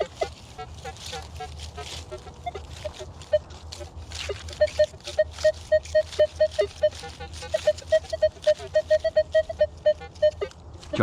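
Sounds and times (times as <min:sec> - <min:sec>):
metal detector beeping: 0:00.0 - 0:00.3, 0:02.4 - 0:11.0
soil scraping: 0:00.0 - 0:11.0.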